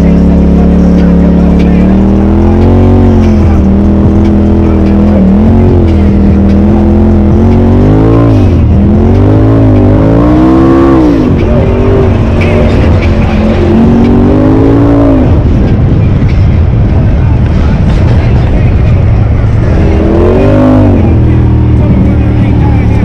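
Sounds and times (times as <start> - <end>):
engine revving under throttle: 0.0 - 15.8, 19.4 - 23.0.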